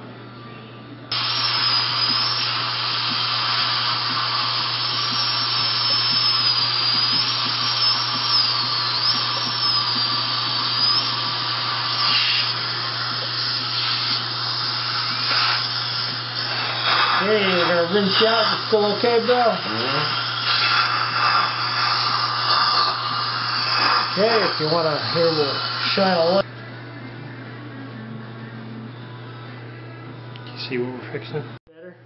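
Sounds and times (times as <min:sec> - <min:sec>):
steady hiss: 0:01.1 - 0:26.4
dental drill whine: 0:01.1 - 0:26.5.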